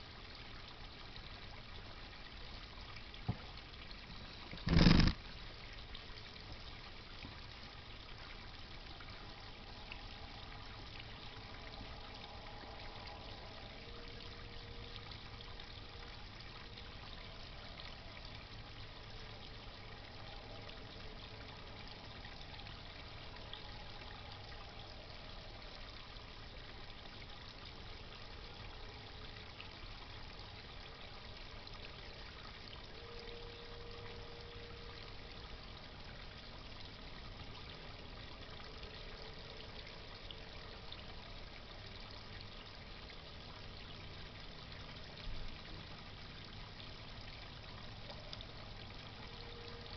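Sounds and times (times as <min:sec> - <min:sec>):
water trickling and splashing: 0:00.0 - 0:49.9
faint held tone: 0:32.8 - 0:35.7.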